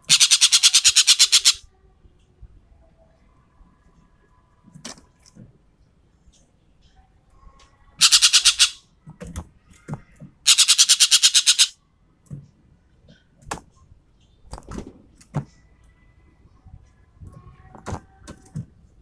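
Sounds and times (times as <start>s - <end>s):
bird rapid rattling calls: 0.0s - 1.6s, 8.0s - 8.8s, 10.5s - 11.7s
short bird clicks and calls: 0.1s - 1.6s, 8.0s - 8.8s, 10.5s - 11.7s.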